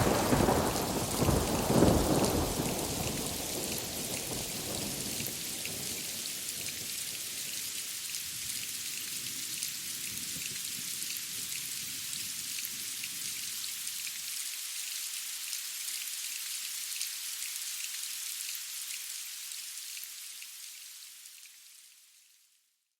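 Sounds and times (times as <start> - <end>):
low thunder rumble: 0.0 - 5.2
steady rain: 0.0 - 22.6.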